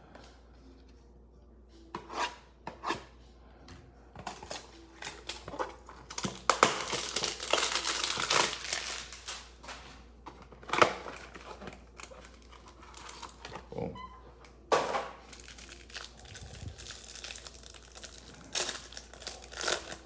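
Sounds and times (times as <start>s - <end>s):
plastic wrapping crinkling and tearing: 4.4s - 10.0s, 10.6s - 13.5s, 15.2s - 20.0s.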